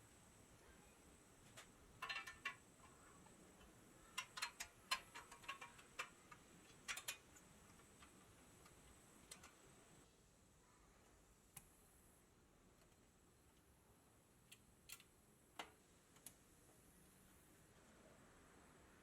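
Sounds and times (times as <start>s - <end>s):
small hard parts clicking: 1.4s - 9.8s.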